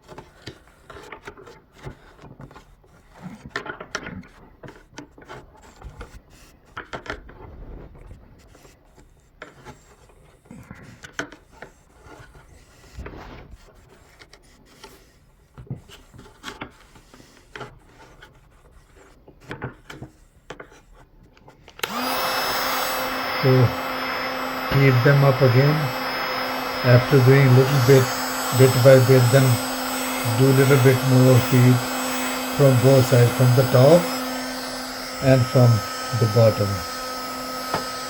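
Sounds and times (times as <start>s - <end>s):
screwdriver scraping sealant: 21.8s - 38.0s.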